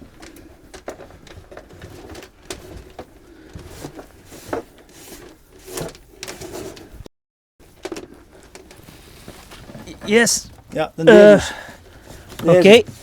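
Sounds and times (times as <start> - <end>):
electrical cable scraping through wall: 7.9 - 10.6.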